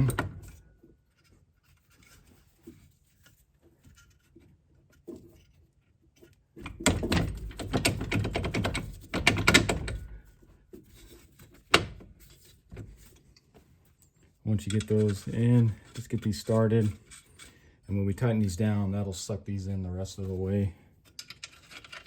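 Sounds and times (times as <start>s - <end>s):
metal bolt clunking and rattling: 6.2s - 13.3s.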